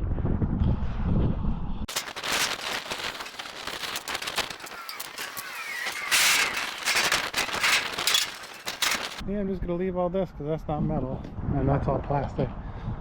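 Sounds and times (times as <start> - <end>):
junk rattling and clattering: 1.9 - 9.2
rustling burst: 1.9 - 9.2.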